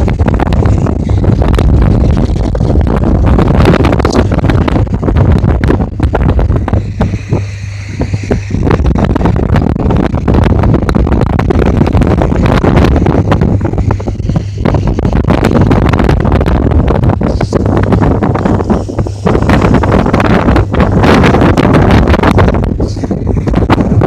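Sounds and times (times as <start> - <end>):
boat engine drone: 0.0 - 24.0
wind buffeting microphone: 0.0 - 24.0.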